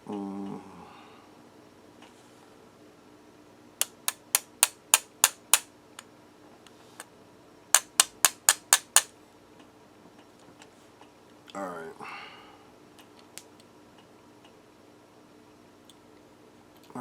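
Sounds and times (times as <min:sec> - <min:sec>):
sharp clicks: 0:03.8 - 0:05.7, 0:07.8 - 0:09.1.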